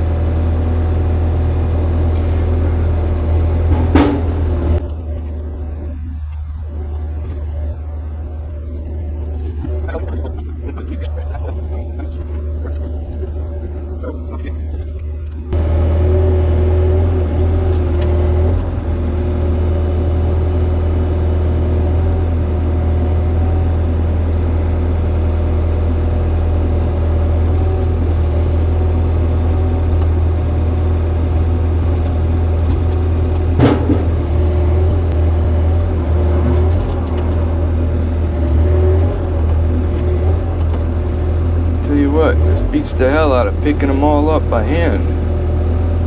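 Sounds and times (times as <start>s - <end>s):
diesel engine running: 0.0s - 46.0s
sharp knock: 3.7s - 4.8s.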